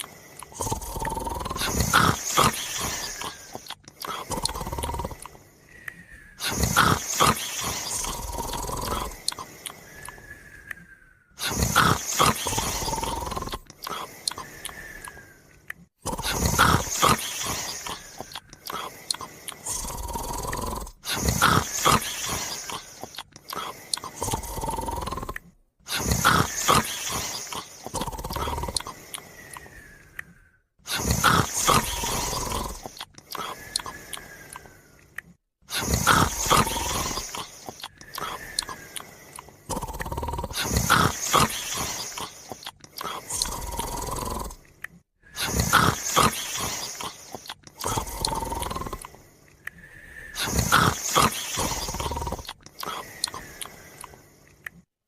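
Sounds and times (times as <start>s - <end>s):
loud rattling snoring: 0.0s - 5.6s, 6.4s - 10.1s, 11.4s - 15.2s, 15.8s - 29.8s, 30.8s - 34.7s, 35.6s - 49.5s, 50.2s - 54.9s
thin whistle in breaths: 4.8s - 15.7s, 26.0s - 32.8s, 33.4s - 35.1s, 35.8s - 44.5s, 45.2s - 54.6s.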